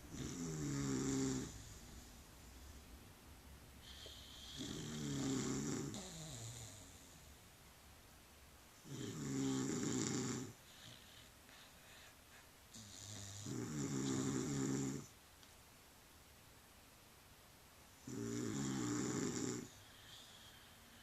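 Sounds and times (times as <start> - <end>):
loud snoring: 0.1 - 1.8, 3.8 - 7.2, 8.8 - 11.1, 12.7 - 15.1, 18.0 - 21.0
quiet breath out: 3.8 - 5.3, 10.6 - 12.6, 19.6 - 21.0.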